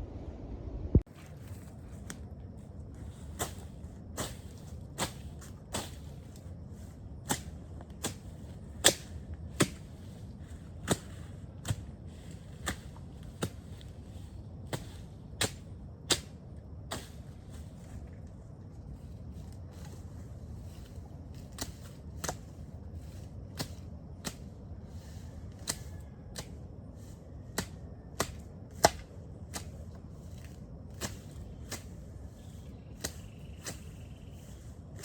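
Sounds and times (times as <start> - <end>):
machete slashing through weeds: 7.3 - 9.9.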